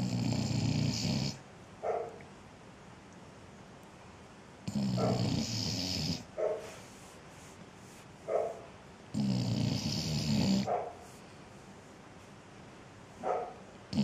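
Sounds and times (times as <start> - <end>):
pet snoring: 0.0 - 1.4, 4.6 - 6.3, 9.1 - 10.7.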